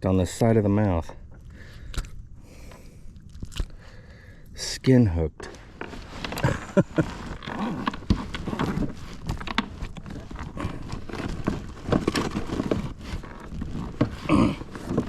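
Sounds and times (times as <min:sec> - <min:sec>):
gear knocking and clattering: 0:06.2 - 0:15.0.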